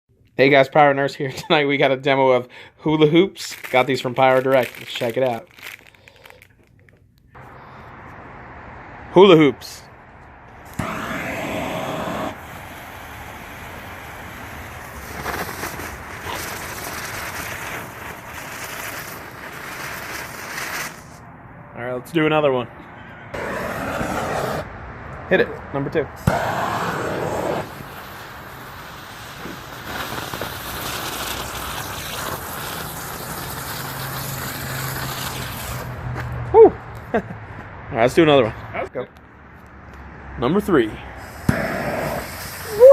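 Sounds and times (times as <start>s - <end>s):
firework hissing and crackling: 3.4s - 6.5s, 10.6s - 21.2s, 23.4s - 24.7s, 26.2s - 36.0s, 41.1s - 42.9s.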